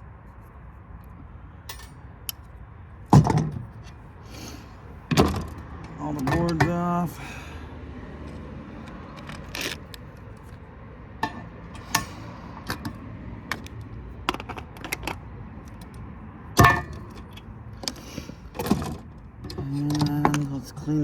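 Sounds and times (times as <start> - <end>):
metal parts and tools clinking: 1.6 - 4.0, 5.1 - 7.2, 8.3 - 10.6, 11.2 - 16.0, 16.6 - 20.7.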